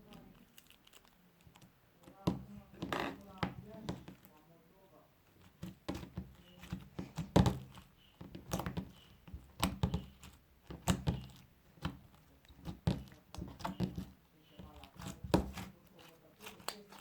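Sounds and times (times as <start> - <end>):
sticky clicks of slime: 5.4 - 17.0.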